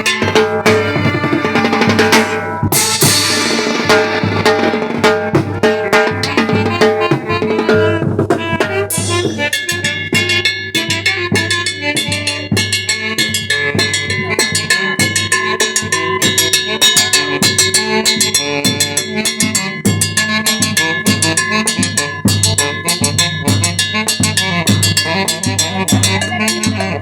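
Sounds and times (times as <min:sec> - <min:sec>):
brass band playing: 0:00.0 - 0:27.0
cymbal crash: 0:02.1 - 0:05.6.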